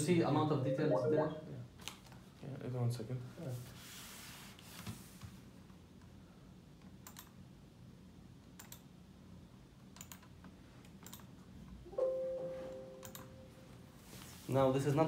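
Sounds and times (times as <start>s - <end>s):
low steady hum: 0.0s - 1.8s
ringing tone: 0.6s - 1.5s.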